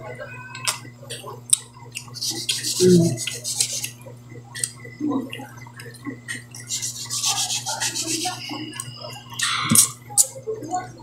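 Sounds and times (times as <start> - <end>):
steady low hum: 0.0 - 11.0
chewing and lip smacking: 0.5 - 7.9.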